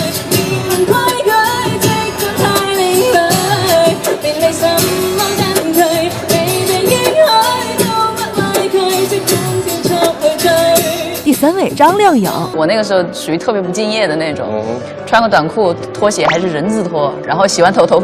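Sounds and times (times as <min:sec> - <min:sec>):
young woman singing pop song: 0:00.5 - 0:12.5.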